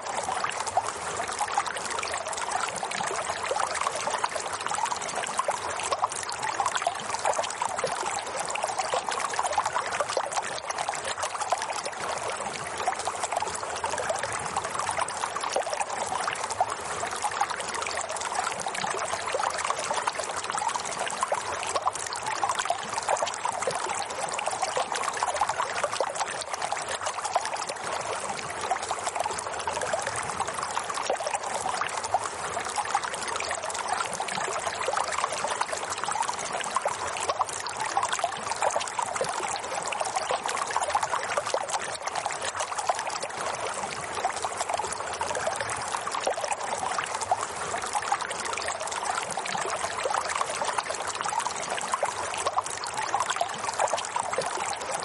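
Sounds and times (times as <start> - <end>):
water trickling: 0.0 - 55.0.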